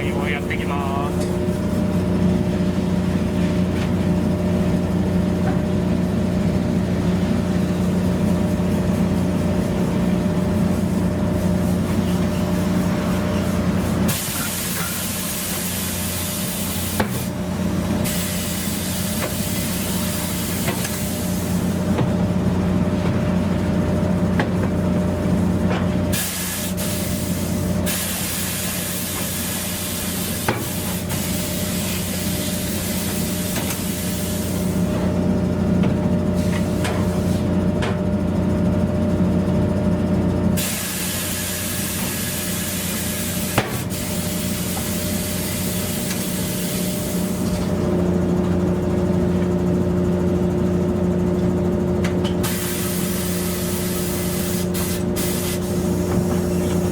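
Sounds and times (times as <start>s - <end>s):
machine hum: 0.0s - 14.2s
hissing spray: 52.5s - 55.7s.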